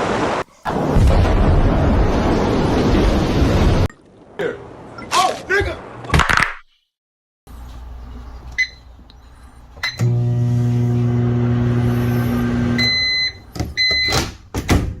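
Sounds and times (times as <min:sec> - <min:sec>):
microwave beeps: 0:08.6 - 0:08.8, 0:09.8 - 0:14.2
microwave oven humming: 0:10.0 - 0:13.1.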